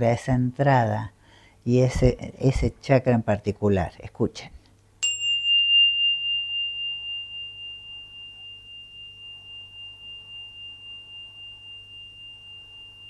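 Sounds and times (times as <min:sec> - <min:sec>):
tuning pin ringing: 0:05.0 - 0:13.0.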